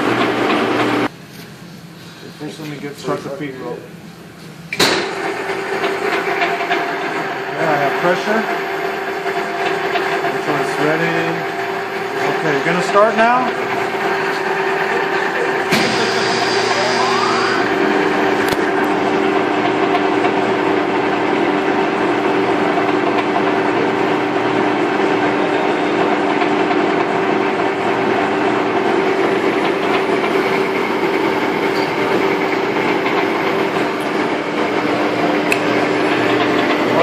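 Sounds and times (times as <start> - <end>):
grinder machine humming: 0.0 - 1.2, 5.1 - 37.0
rising mechanical whine: 15.0 - 19.3.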